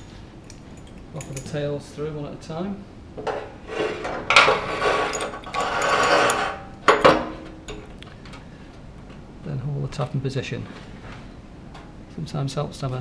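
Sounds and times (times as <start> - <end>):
tap tails scraping and rattling: 3.2 - 7.0.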